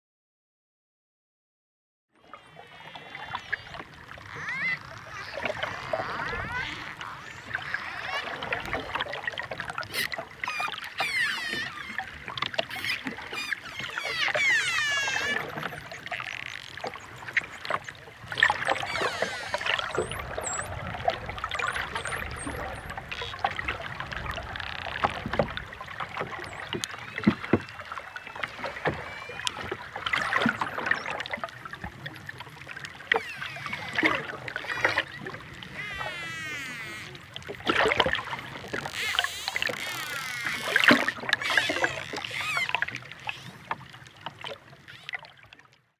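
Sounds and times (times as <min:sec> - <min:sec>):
dolphin clicks and buzzing: 0:02.7 - 0:31.2, 0:32.8 - 0:43.8, 0:44.8 - 0:45.3
dolphin whistles: 0:03.4 - 0:08.9, 0:09.9 - 0:16.4, 0:18.4 - 0:23.4, 0:26.4 - 0:31.1, 0:41.4 - 0:43.6.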